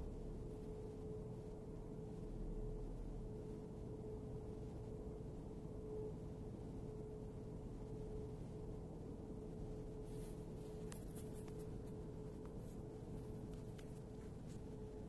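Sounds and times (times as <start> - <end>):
air conditioner humming: 0.0 - 15.0.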